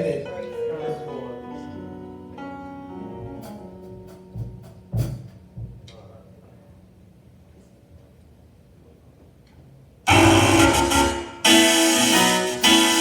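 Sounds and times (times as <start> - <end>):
church band playing held chords: 10.1 - 13.0
drum hits: 10.1 - 13.0.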